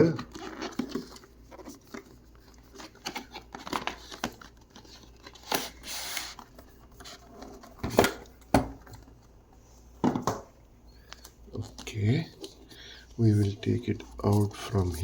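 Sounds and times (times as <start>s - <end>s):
packaging ripping: 0.0s - 6.5s
packaging rustling and clicking: 0.0s - 9.3s
items knocking on table: 10.0s - 10.5s.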